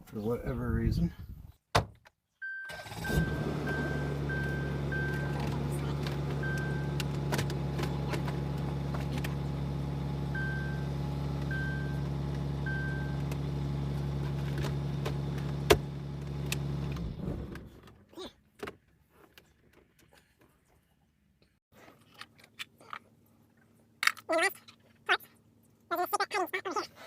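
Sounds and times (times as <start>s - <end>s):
truck engine idling: 2.7s - 17.1s.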